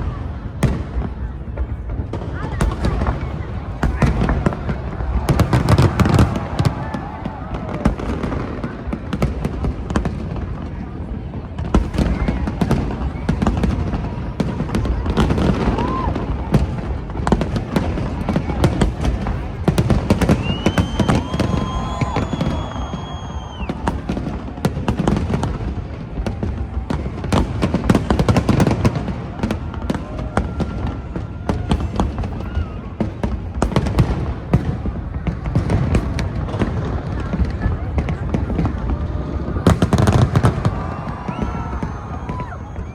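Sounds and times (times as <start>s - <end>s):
fireworks bangs and crackles: 0.0s - 42.9s
high whistle-like tone: 20.4s - 23.8s.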